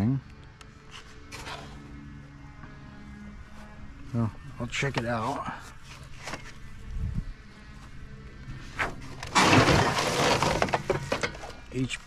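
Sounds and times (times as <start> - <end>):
scrap items thudding: 8.8 - 11.5.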